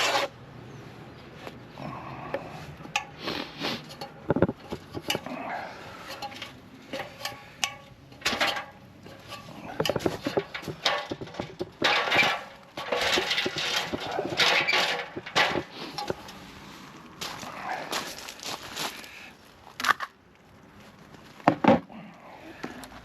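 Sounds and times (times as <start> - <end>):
plastering tools scraping: 0.0 - 0.4, 2.7 - 16.6
plastering tools clinking: 6.0 - 16.4.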